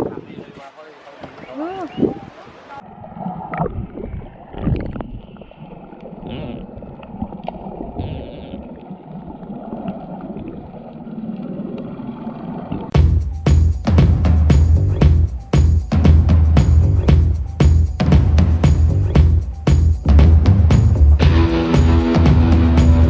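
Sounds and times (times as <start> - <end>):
rushing water: 0.0 - 8.0
drum-led music: 13.0 - 23.0.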